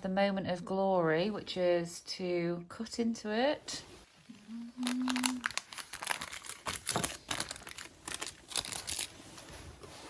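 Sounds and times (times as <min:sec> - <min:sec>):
bread crinkling and crunching: 0:04.8 - 0:09.7.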